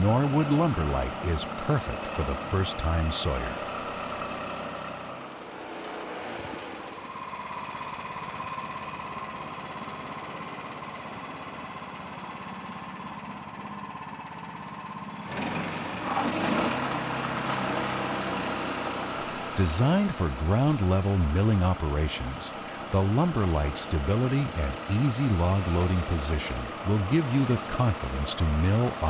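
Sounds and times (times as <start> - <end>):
steady whine: 0.0 - 4.3, 19.1 - 29.0
small engine running: 0.0 - 29.0.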